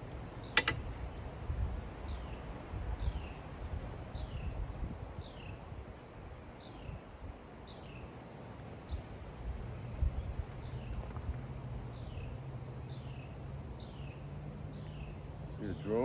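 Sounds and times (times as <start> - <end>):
wind buffeting microphone: 0.0 - 7.5, 8.9 - 12.5
bird chirping: 11.9 - 16.0.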